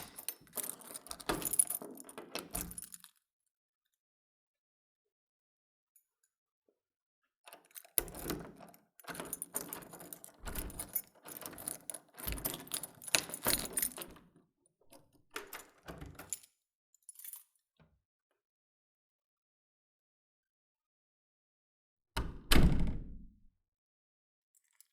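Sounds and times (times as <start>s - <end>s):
key rattling and clicking in lock: 0.0s - 3.2s, 7.5s - 14.3s, 14.9s - 16.5s
keys jangling: 0.0s - 3.2s, 7.6s - 14.2s.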